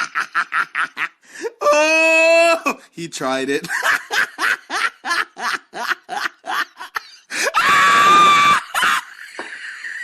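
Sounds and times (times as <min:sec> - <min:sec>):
loud held scream: 0:07.4 - 0:09.1.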